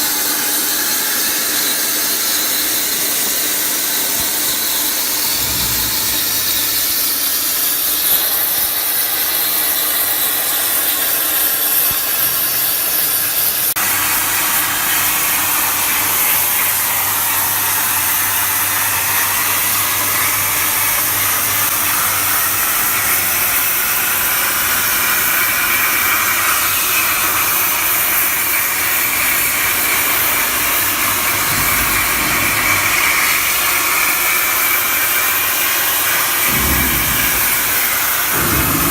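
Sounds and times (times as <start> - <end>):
plasma torch cutting steel: 0.0 - 38.9
low hum: 5.1 - 7.3, 29.4 - 33.6, 36.5 - 38.9.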